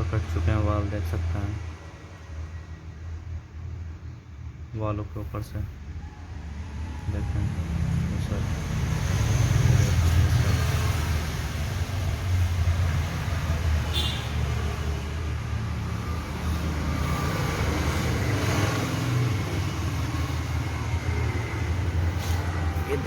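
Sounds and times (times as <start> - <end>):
engine low rumble: 0.0 - 23.0.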